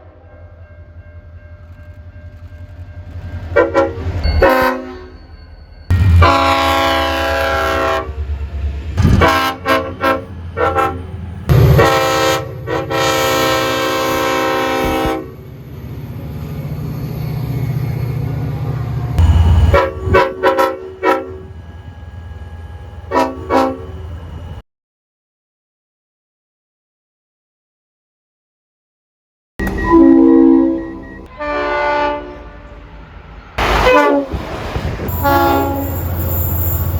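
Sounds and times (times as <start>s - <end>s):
low train rumble: 0.0s - 24.6s, 29.6s - 36.9s
multi-tone train horn: 3.5s - 5.2s, 5.9s - 8.4s, 9.1s - 15.5s, 18.9s - 24.6s, 29.6s - 36.9s.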